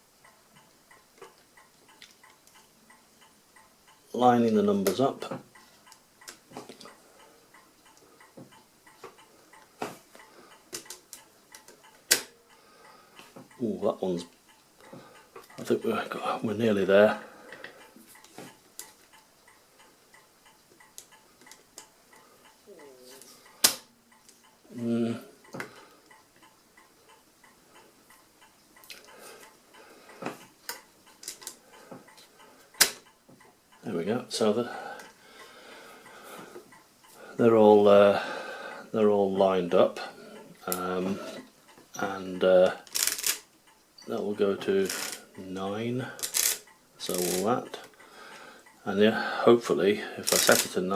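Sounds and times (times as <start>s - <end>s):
mechanical calculator clicking: 42.9s - 43.5s, 46.2s - 47.5s, 50.2s - 50.8s
mechanical calculator clicks: 42.9s - 43.5s.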